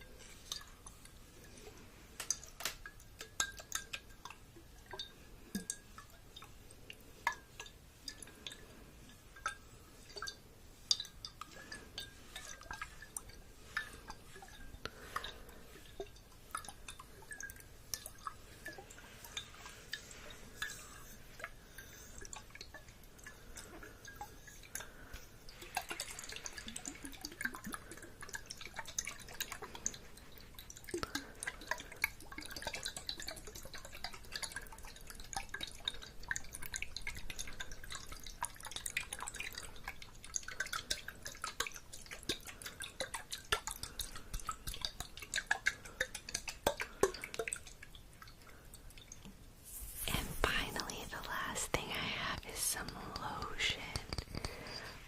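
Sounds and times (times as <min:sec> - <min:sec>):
soft hiss: 0:00.0 - 0:28.0, 0:48.0 - 0:55.0
faint steady tone: 0:00.0 - 0:55.0
small soft clicks and taps: 0:00.2 - 0:50.9, 0:52.8 - 0:55.0.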